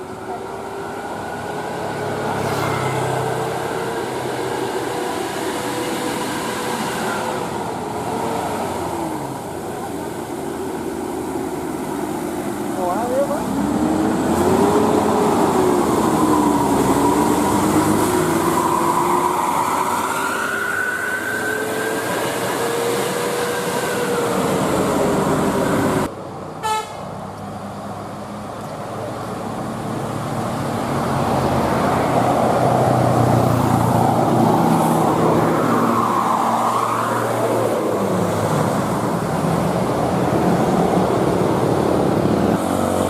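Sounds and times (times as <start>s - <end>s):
bus engine: 0.0s - 43.0s
bus horn long wavering tone: 26.6s - 27.1s.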